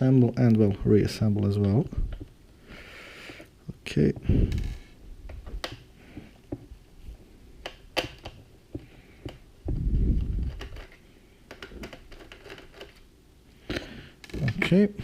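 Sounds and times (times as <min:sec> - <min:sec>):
low rumbling handling noise: 0:04.0 - 0:06.8, 0:08.7 - 0:11.0.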